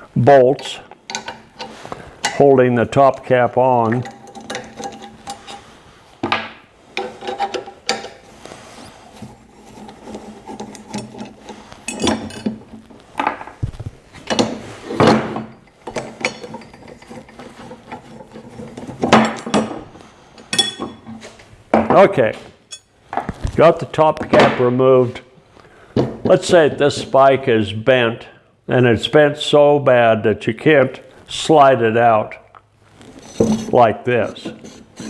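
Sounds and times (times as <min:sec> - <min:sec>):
metal clinks and scrapes: 0:03.9 - 0:05.8, 0:07.0 - 0:13.0, 0:14.3 - 0:21.4, 0:22.7 - 0:23.0.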